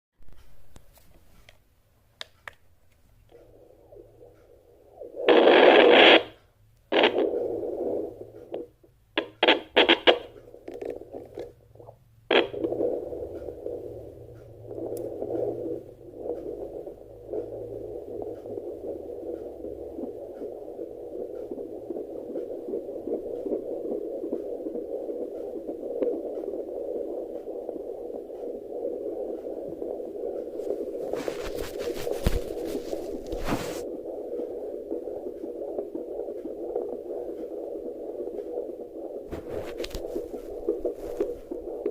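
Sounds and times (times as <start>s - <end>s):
scratchy bursts from speaker: 5.2s - 8.2s
doppler whooshing static: 12.3s - 41.9s.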